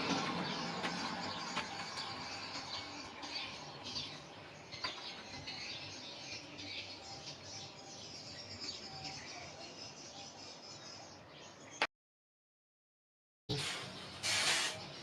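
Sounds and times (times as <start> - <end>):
small birds chirping: 0.0 - 11.9.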